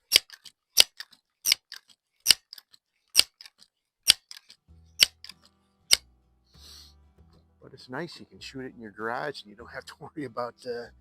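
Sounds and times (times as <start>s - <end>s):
soft background music: 4.6s - 11.0s.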